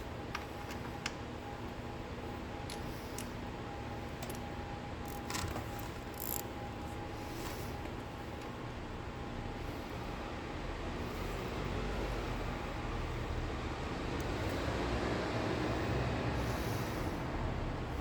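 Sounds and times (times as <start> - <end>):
steady background hum: 0.0 - 18.0
clicks of hand tools and metal: 5.1 - 6.5.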